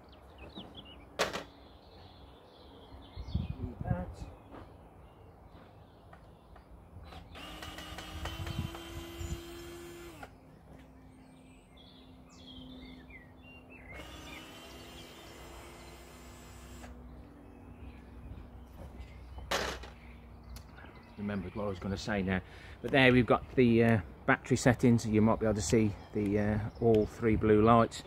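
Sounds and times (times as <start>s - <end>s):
birds chirping: 0.0s - 28.0s
cordless drill motor whine: 7.1s - 10.3s, 13.9s - 17.0s.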